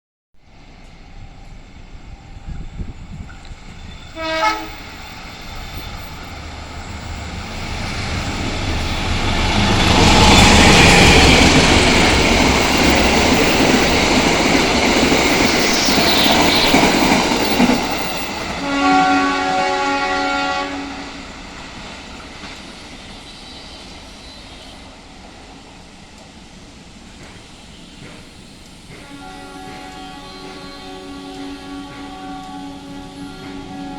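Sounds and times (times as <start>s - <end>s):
train passing: 0.4s - 33.9s
train horn blast: 4.0s - 5.0s, 18.5s - 21.2s, 28.9s - 33.9s.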